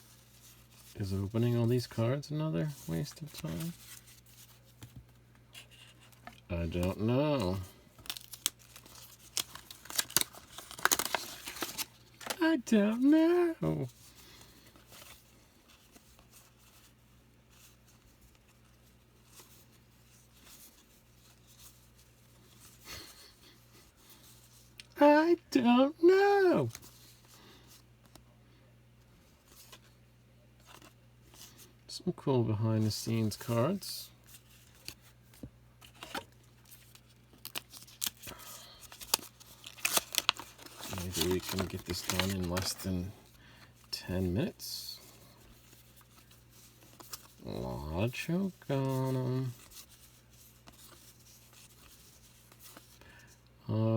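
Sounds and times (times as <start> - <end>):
trading cards and wrappers rustling: 0.0 - 28.2, 32.8 - 53.4
low steady hum: 0.0 - 53.9
wrapper tearing: 6.8 - 12.4, 36.1 - 43.0.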